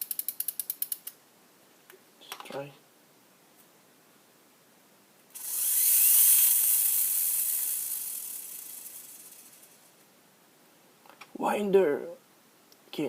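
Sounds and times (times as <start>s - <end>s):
high whir of winder: 5.4s - 9.7s.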